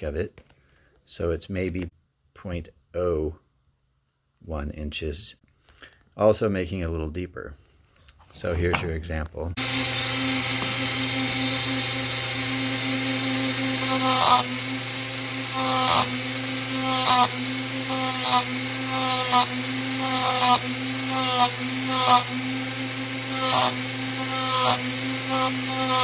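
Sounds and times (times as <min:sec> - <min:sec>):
power tool running: 0:09.6 - 0:26.0
tool cutting metal gear teeth: 0:13.8 - 0:14.6, 0:15.4 - 0:22.5, 0:23.2 - 0:26.0.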